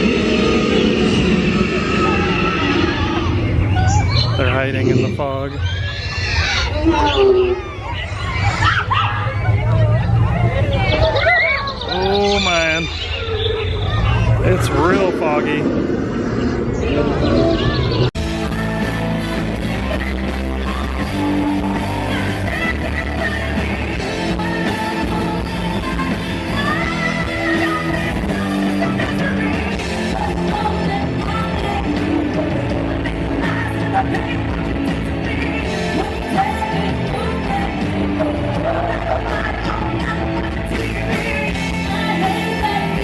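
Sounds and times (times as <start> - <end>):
rock music with singing: 16.2 - 43.0.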